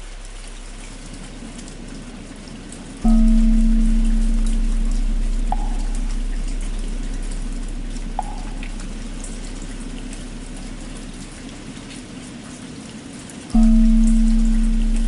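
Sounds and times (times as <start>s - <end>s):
deep hum of temple bell: 0.0s - 11.9s, 13.6s - 15.0s
faint light ticks: 0.0s - 12.0s
steady rain: 0.0s - 15.0s.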